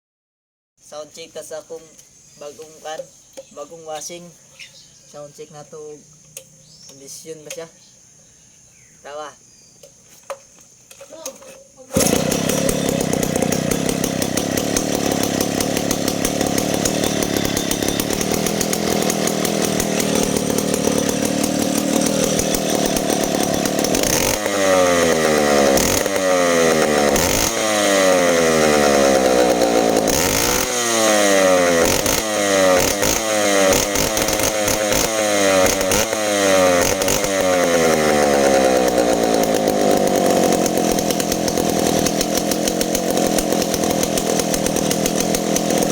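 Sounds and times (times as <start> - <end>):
chainsaw engine revving: 11.9 - 45.9.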